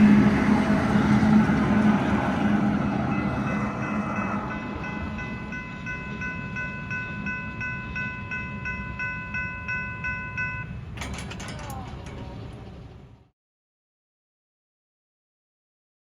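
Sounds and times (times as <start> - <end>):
train rumble: 0.0 - 13.3
level crossing warning bell: 2.8 - 12.8.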